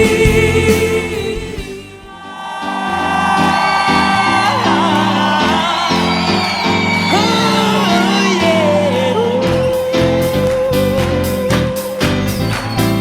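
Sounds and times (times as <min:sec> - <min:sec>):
drum hits: 0:00.0 - 0:02.2
gospel band with singing: 0:00.0 - 0:13.0.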